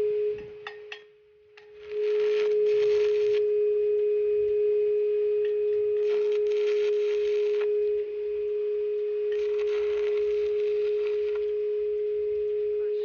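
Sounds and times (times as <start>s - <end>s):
welding arc crackling: 1.8s - 3.4s, 6.0s - 7.7s, 9.3s - 11.5s.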